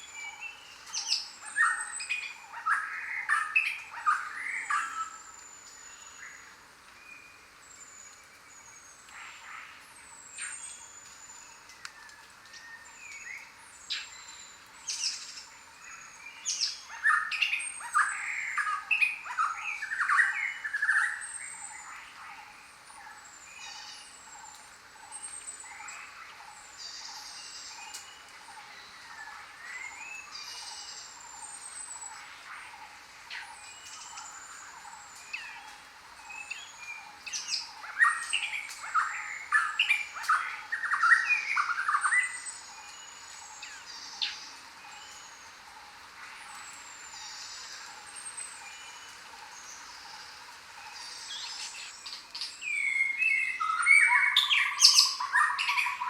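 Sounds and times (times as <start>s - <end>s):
birds whistling: 51.0s - 56.0s.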